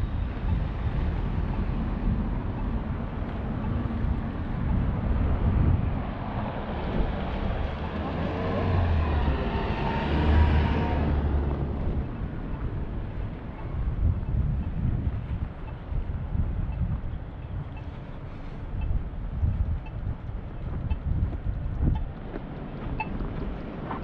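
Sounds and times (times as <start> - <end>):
wind buffeting microphone: 0.0 - 24.0
vehicle driving past: 5.5 - 14.4.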